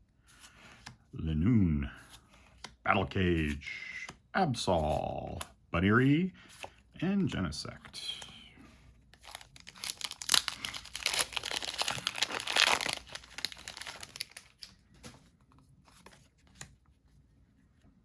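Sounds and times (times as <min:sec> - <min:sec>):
foil wrapper crinkling and tearing: 0:09.2 - 0:14.8.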